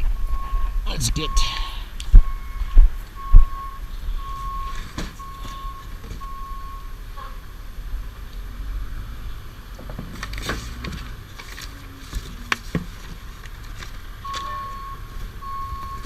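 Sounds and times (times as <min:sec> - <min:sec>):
low rumble: 0:00.0 - 0:04.3
high beeping tone: 0:00.2 - 0:04.7.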